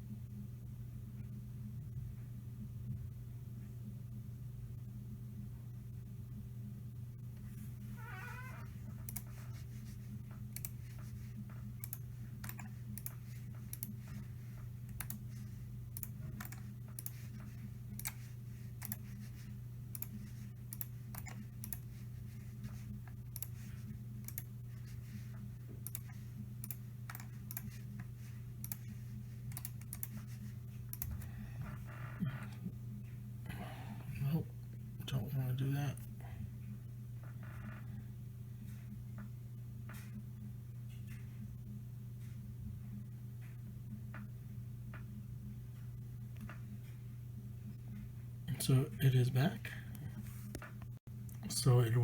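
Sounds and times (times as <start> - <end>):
low electrical hum: 0.0 - 52.0
light irregular clicks and taps: 8.9 - 31.8.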